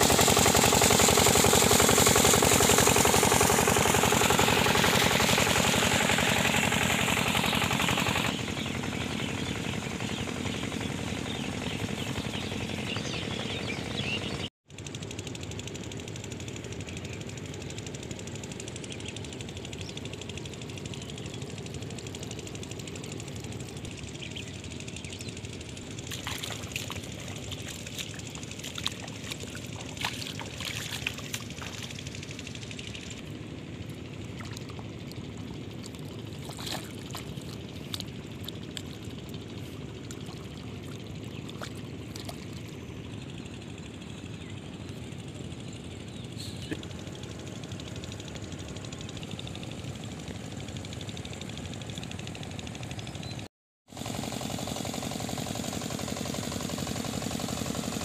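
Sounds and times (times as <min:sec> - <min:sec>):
pump engine running: 0:00.0 - 0:58.0
water gushing and splashing: 0:26.0 - 0:32.4, 0:34.2 - 0:42.6.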